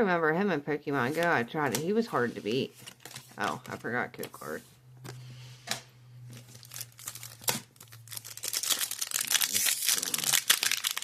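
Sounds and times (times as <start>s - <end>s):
foil wrapper crinkling and tearing: 6.4s - 11.0s.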